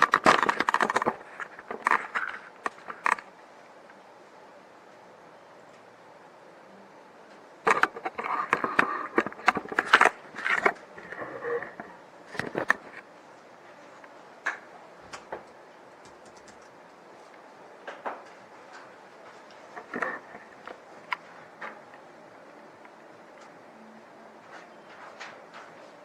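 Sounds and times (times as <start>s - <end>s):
small hard parts clicking and scraping: 0.0s - 3.3s, 7.7s - 13.0s, 19.5s - 22.0s
faint steady hiss: 0.0s - 26.0s.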